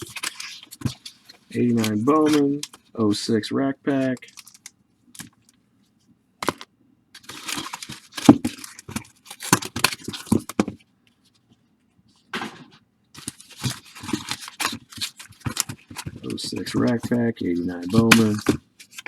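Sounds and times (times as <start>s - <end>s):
wrappers tearing and crinkling: 7.2s - 10.4s, 13.2s - 19.0s.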